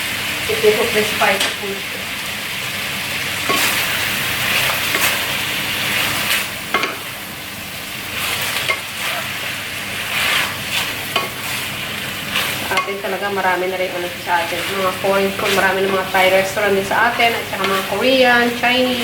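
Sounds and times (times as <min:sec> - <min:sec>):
chicken sizzling in a pan: 0:00.0 - 0:19.0
spatula scraping a pan: 0:08.1 - 0:12.9, 0:17.6 - 0:18.2.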